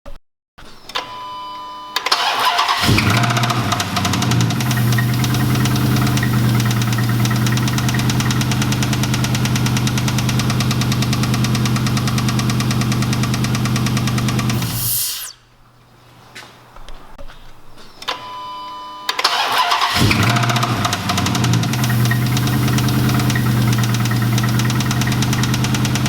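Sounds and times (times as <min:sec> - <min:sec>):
brief tone: 0:00.9 - 0:02.0, 0:18.1 - 0:19.1
car engine cranking and idling: 0:02.1 - 0:14.8, 0:19.2 - 0:26.0
fast even engine ticking: 0:02.7 - 0:15.0, 0:19.6 - 0:26.0.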